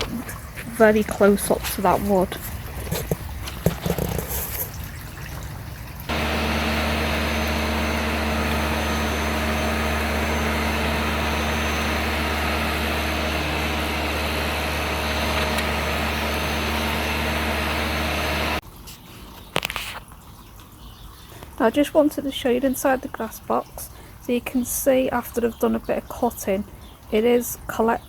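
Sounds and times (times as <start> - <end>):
electric hover mower running: 6.1 - 18.6.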